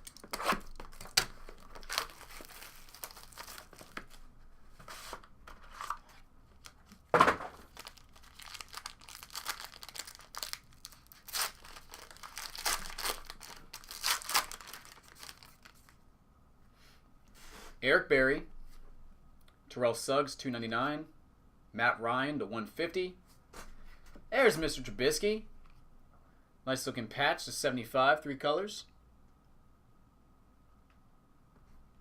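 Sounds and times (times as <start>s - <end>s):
plastic wrapping torn and crinkled: 0.0s - 4.3s, 5.7s - 16.0s.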